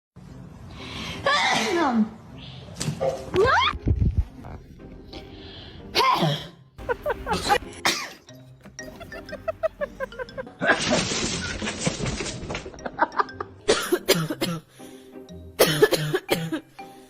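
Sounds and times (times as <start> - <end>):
background music: 0.2 - 17.0
person coughing: 6.0 - 6.6, 7.3 - 8.2, 13.7 - 14.7, 15.6 - 16.6.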